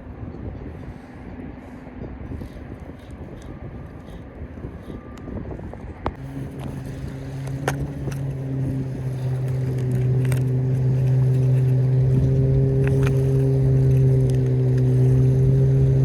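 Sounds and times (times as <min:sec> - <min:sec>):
motorboat engine running: 0:00.0 - 0:16.0.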